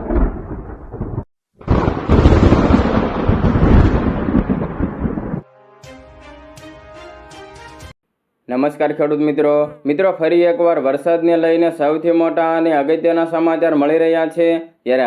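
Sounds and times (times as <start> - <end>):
thunder rumbling: 0.0 - 5.4
melodic music: 5.4 - 8.0.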